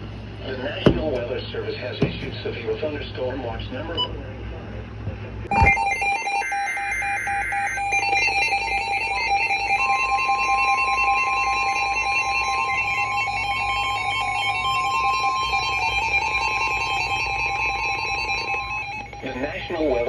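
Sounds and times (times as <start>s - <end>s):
higher steady tone: 5.5s - 19.6s
steady electronic attention tone: 5.5s - 19.6s
warbling data burst: 5.5s - 19.7s.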